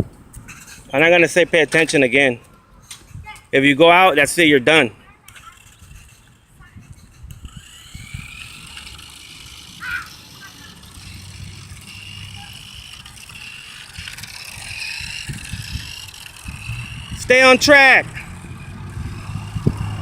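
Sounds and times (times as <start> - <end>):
toy car electric motor whining: 0.5 - 0.9, 5.2 - 20.0.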